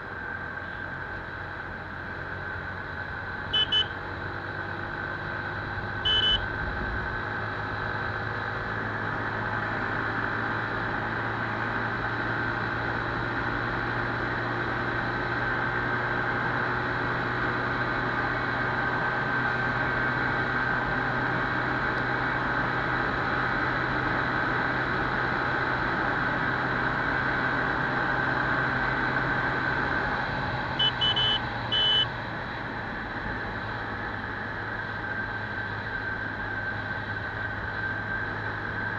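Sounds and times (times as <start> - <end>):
motorcycle engine at high speed: 0.0 - 38.9
short high-pitched beeps: 3.6 - 4.0, 6.1 - 6.4, 30.8 - 32.1.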